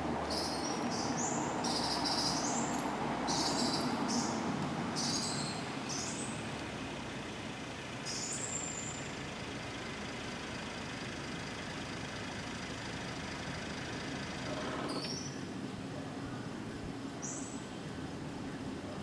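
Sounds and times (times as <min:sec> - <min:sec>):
high-pitched bird calls: 0:00.3 - 0:04.4, 0:05.0 - 0:06.3.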